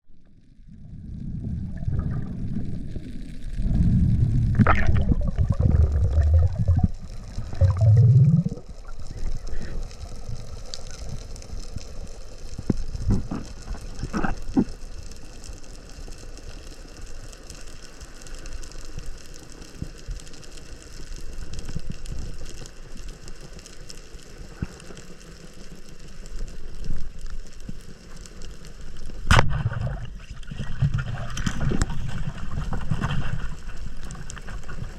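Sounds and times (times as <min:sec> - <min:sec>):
underwater rumble and gurgling: 0:00.0 - 0:34.9
underwater hiss: 0:01.2 - 0:15.4.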